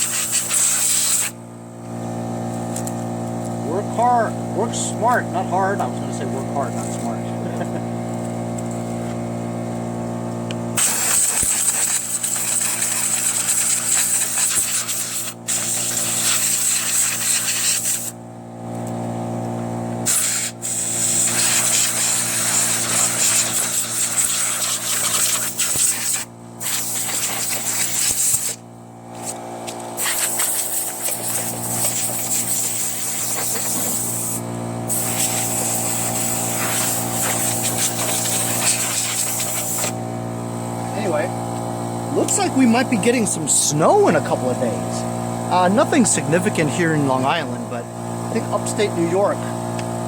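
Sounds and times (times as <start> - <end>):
compressed air blow gun hissing: 0.0 - 1.4, 10.8 - 18.2, 20.0 - 29.4, 30.0 - 40.0
steady machine hum: 0.0 - 50.0.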